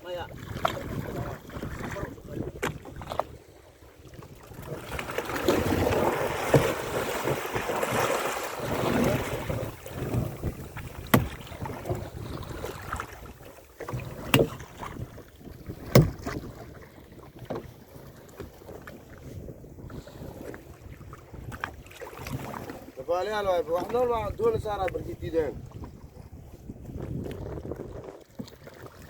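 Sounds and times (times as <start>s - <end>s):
wind buffeting microphone: 0.0s - 8.0s, 8.6s - 28.4s
sea water rushing: 0.0s - 26.3s
sharp knocks: 11.1s - 11.4s, 15.8s - 16.4s.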